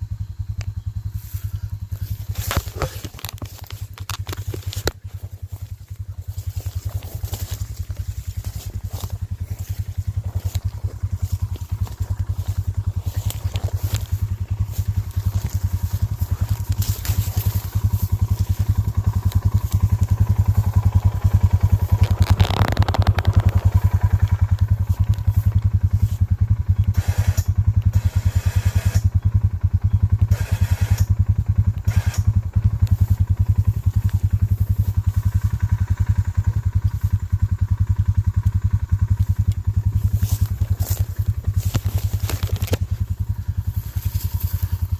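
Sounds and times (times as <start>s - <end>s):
small engine running: 0.0s - 44.9s
scraping clatter: 6.3s - 25.2s.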